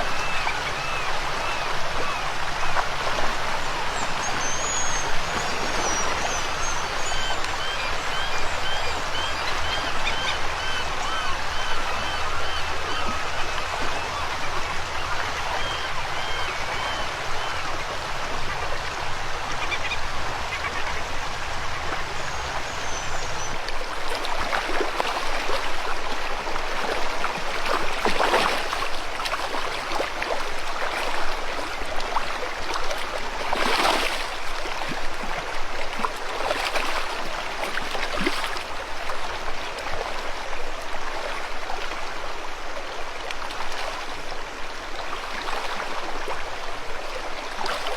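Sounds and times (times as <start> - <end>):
bird calls: 0.0 - 17.6
river water rushing: 0.0 - 47.9.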